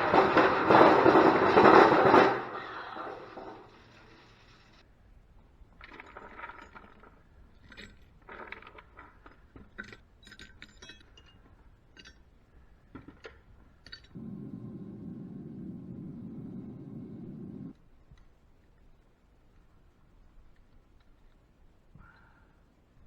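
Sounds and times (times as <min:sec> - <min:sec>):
small metal pieces clinking: 0:05.8 - 0:12.3
low rushing noise: 0:14.2 - 0:17.7.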